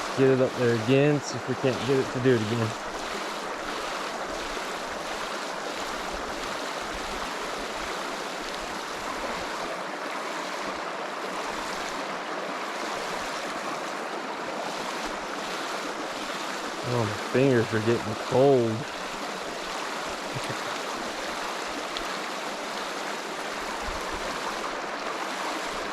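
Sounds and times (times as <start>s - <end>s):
river water flowing: 0.0s - 25.9s.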